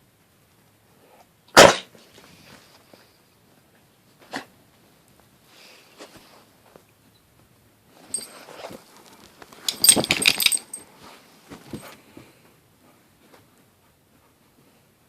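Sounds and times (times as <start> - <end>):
dog collar tags jangling: 8.1 - 8.7, 9.6 - 10.9.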